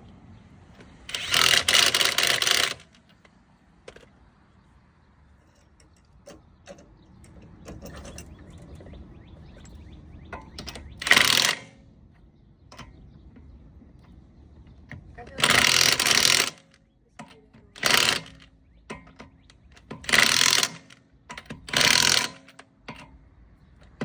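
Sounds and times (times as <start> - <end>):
hand tools clinking on metal: 15.2 - 23.2.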